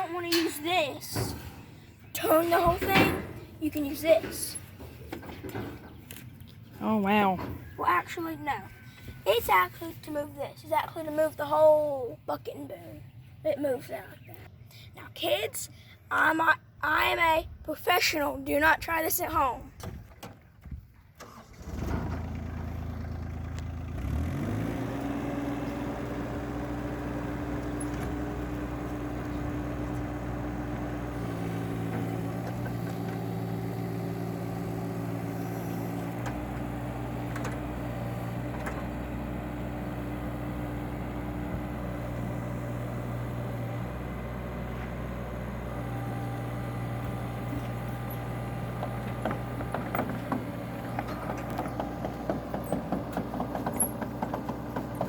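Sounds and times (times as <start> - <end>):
excavator engine revving: 21.2 - 55.0.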